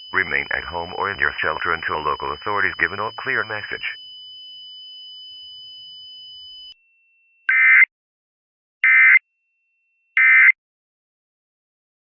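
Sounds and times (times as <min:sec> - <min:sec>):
steady high tone: 0:00.0 - 0:07.3
raspy digital data bursts: 0:00.2 - 0:04.0.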